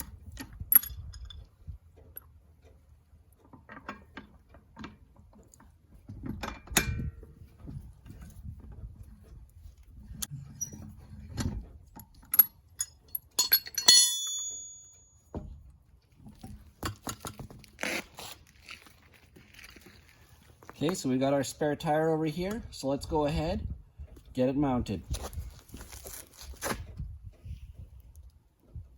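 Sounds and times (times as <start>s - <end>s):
metal lug nuts clinking: 0.0s - 2.4s, 10.4s - 18.0s
ringing metallic clink: 12.3s - 15.3s.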